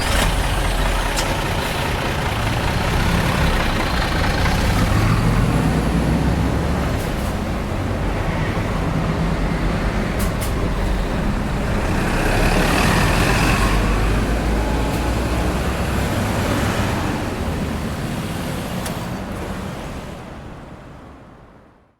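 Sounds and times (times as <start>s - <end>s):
bus engine running: 0.0s - 21.6s
traffic: 0.0s - 21.9s.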